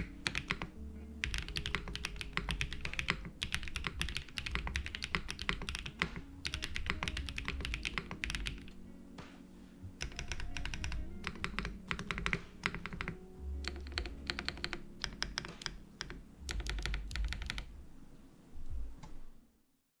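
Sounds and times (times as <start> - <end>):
fast mechanical keyboard typing: 0.0 - 8.8, 10.0 - 17.7
soft background music: 0.0 - 19.6.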